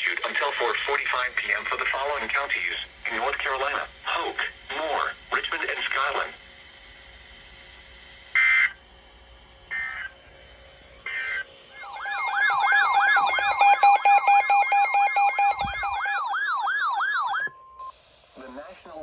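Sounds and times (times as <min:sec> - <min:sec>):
digital data tone bursts: 0:11.1 - 0:17.5
warbling electronic alert tone: 0:11.8 - 0:17.5.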